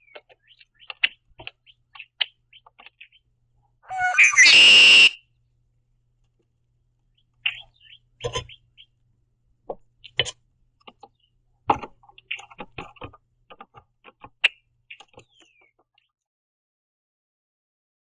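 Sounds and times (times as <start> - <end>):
bird call note: 3.9 - 5.2.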